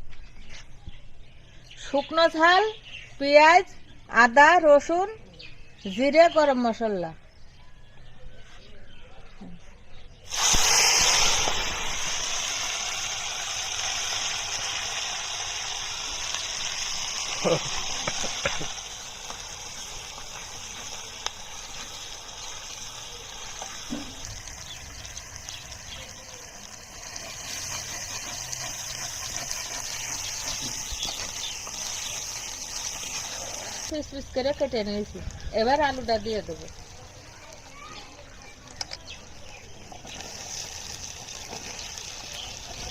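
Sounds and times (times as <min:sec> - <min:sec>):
food sizzling in hot oil: 0:10.3 - 0:38.4, 0:39.2 - 0:42.9.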